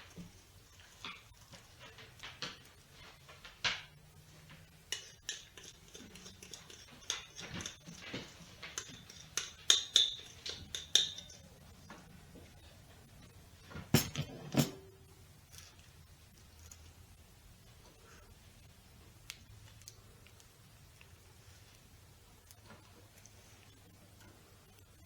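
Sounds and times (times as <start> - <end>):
spoon scraping mixing bowl: 4.7 - 11.8, 13.8 - 15.1.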